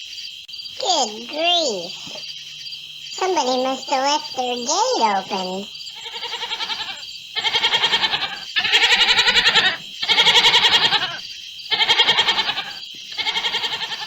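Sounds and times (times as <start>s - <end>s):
crickets chirping: 0.0s - 14.0s
farm animal bleating: 4.1s - 14.0s.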